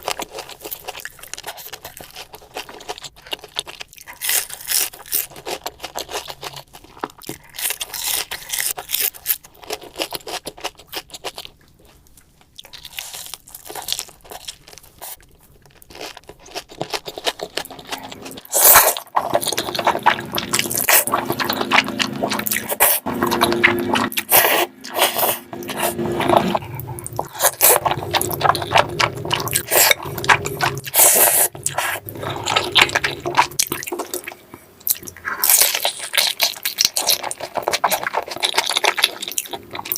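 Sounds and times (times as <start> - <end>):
crunchy food being chewed: 0.0 - 39.9.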